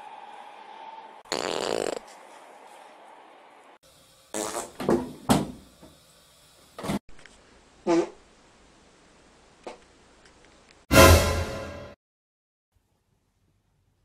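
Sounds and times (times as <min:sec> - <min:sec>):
short fart noises: 0:01.3 - 0:02.0, 0:04.3 - 0:04.9, 0:07.8 - 0:08.2.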